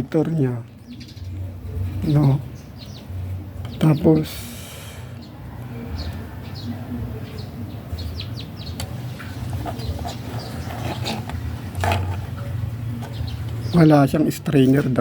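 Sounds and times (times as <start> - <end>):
small birds chirping: 0.0 - 15.0.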